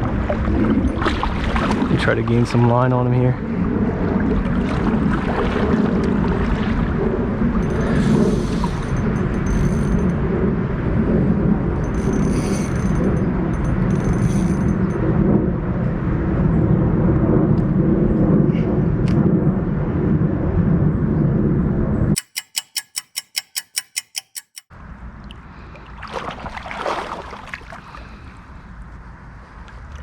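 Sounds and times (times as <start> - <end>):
water splashing: 0.0 - 2.8, 4.0 - 7.0, 25.8 - 28.1
creek water: 0.0 - 9.7, 25.2 - 28.6
loud low rumble: 2.0 - 22.2
rapid sharp clicks: 22.2 - 24.7.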